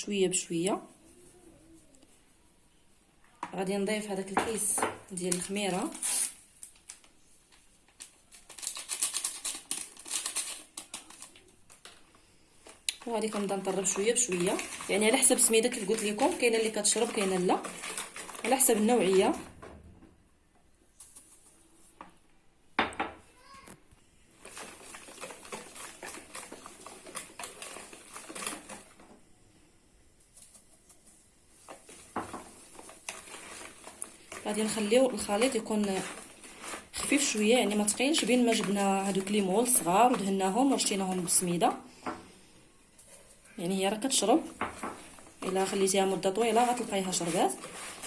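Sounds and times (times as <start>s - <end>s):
paper sachet crinkling: 5.3s - 19.5s, 24.3s - 29.1s, 30.2s - 41.5s, 44.4s - 48.0s.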